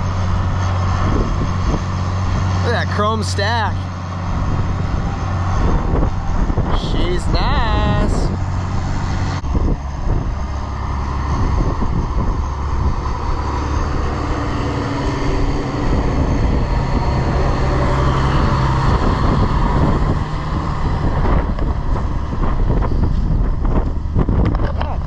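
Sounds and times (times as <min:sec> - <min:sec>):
heavy vehicle engine running: 0:00.0 - 0:25.0.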